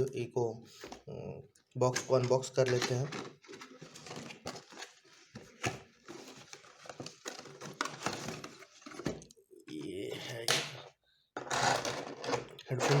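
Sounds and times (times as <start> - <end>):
cardboard packaging rustling: 2.0 - 9.3.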